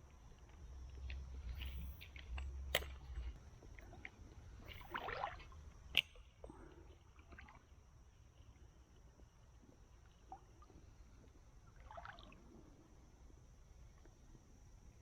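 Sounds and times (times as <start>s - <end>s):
creek water: 0.8s - 7.8s, 11.8s - 12.5s
fishing tackle clicks: 1.0s - 3.4s, 5.9s - 6.2s
water splashing: 4.7s - 5.6s.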